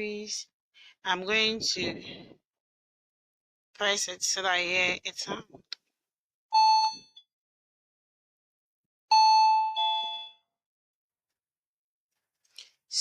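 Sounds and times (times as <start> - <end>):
doorbell ding-dong: 9.1 - 10.4.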